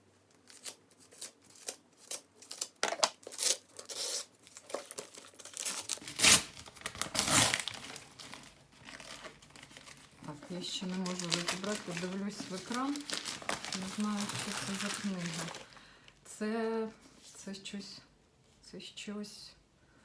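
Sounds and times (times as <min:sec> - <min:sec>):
packaging ripping: 0:00.3 - 0:15.8
packaging crinkling: 0:00.3 - 0:15.9.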